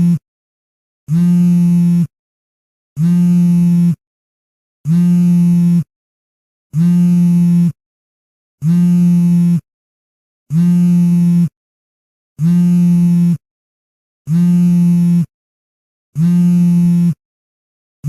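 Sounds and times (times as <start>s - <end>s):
phone vibrating buzz: 0.0s - 0.2s, 1.1s - 2.1s, 3.0s - 4.0s, 4.8s - 5.9s, 6.7s - 7.8s, 8.6s - 9.7s, 10.5s - 11.6s, 12.4s - 13.4s, 14.3s - 15.3s, 16.1s - 17.2s.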